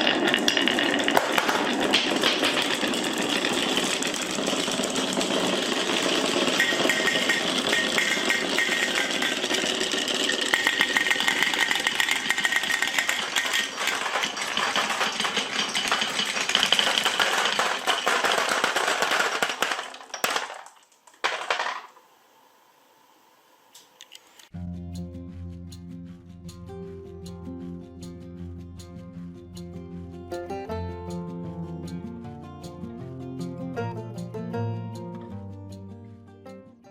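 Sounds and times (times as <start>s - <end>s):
glass marbles rolling and clattering: 0.0s - 22.1s.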